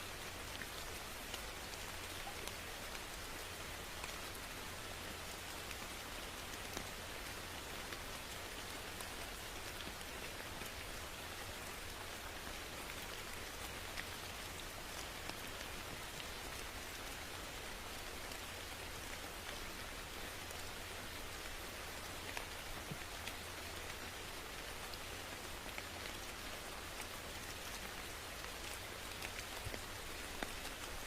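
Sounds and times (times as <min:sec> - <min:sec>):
steady rain falling: 0:00.0 - 0:31.0
raindrops tapping on a surface: 0:22.3 - 0:23.4, 0:29.1 - 0:31.0.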